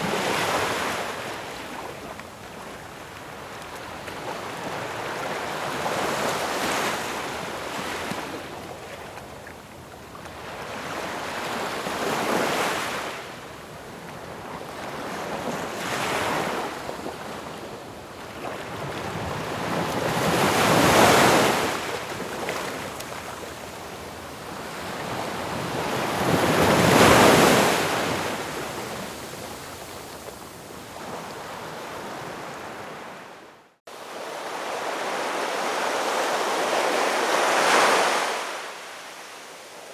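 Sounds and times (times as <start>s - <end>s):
ocean waves breaking: 25.0s - 39.9s.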